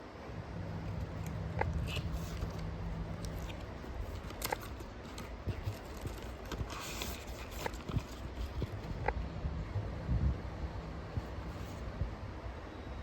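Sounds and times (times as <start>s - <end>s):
low steady hum: 0.0s - 13.0s
packaging crinkling: 0.8s - 9.1s.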